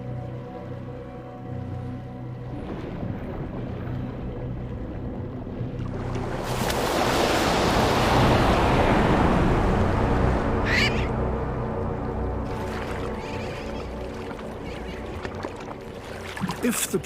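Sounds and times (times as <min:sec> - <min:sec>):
background music: 0:00.0 - 0:17.0
rushing water: 0:00.0 - 0:17.0
seabird cry: 0:10.6 - 0:11.2, 0:12.9 - 0:15.4.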